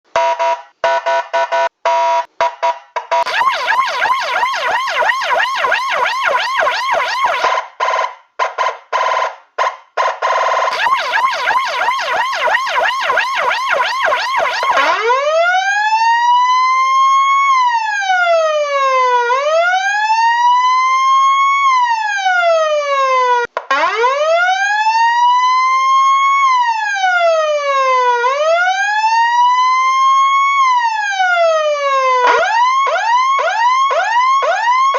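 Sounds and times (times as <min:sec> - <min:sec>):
choppy warbling siren: 0:03.2 - 0:07.6, 0:10.7 - 0:17.2
wailing siren: 0:03.2 - 0:07.6, 0:10.7 - 0:34.9.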